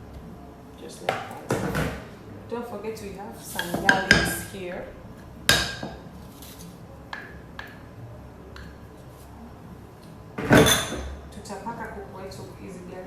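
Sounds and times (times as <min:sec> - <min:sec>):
dishes and utensils clinking: 0:10.4 - 0:11.2.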